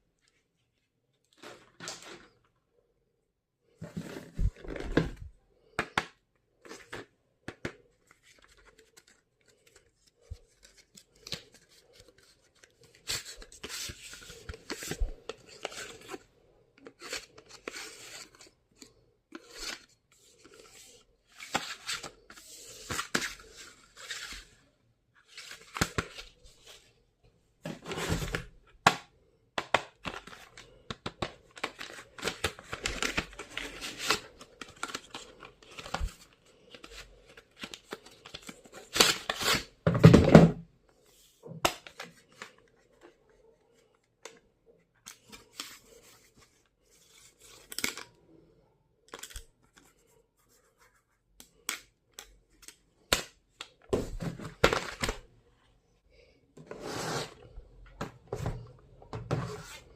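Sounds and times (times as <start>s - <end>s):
packaging rustling: 30.0s - 39.7s.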